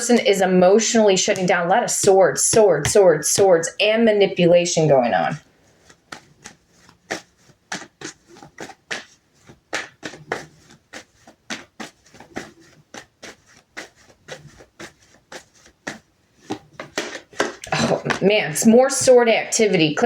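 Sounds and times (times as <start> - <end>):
cards being shuffled: 5.4 - 18.2.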